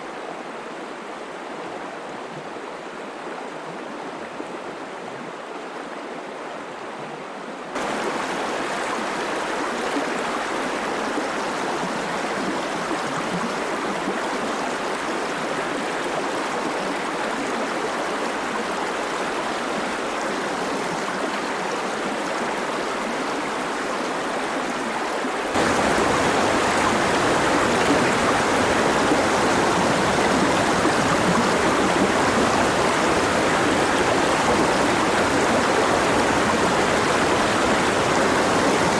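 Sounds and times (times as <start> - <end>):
stream water rushing: 7.8 - 38.9.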